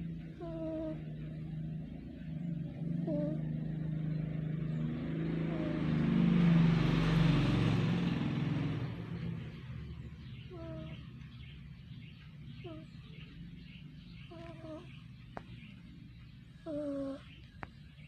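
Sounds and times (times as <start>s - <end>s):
cat purring: 0.0s - 7.7s, 10.5s - 11.0s, 12.6s - 17.9s.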